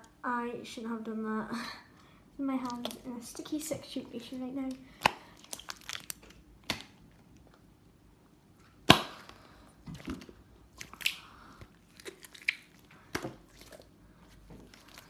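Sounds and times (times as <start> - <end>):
sticky slime pops and clicks: 6.6 - 7.0.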